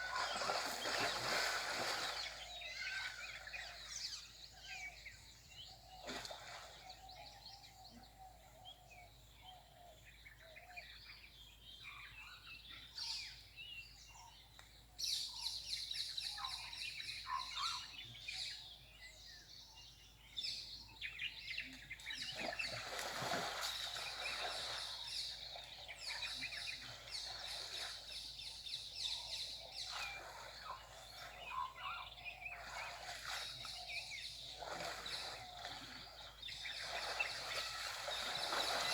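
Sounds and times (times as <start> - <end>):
birds calling and chirping: 0.0 - 8.8, 19.7 - 38.9.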